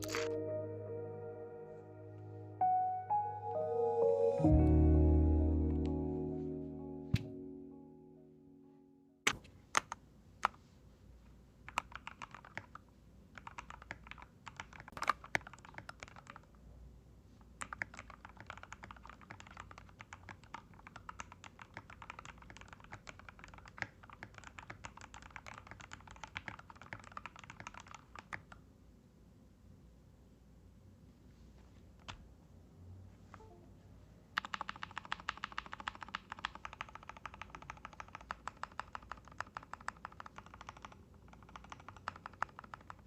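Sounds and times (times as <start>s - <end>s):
mechanical keyboard typing clacks: 11.7s - 12.8s, 13.4s - 16.5s, 17.6s - 28.6s, 34.4s - 43.0s.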